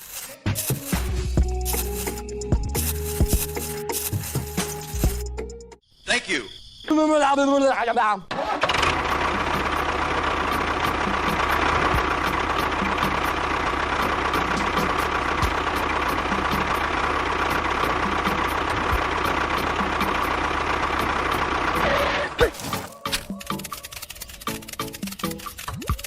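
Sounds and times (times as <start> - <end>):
motor idling: 8.6 - 25.8.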